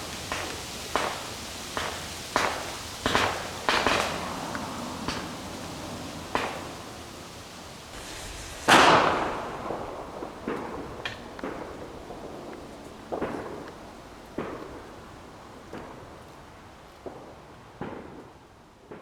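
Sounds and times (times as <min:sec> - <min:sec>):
fireworks bangs and pops: 0:00.0 - 0:07.0, 0:07.8 - 0:19.0.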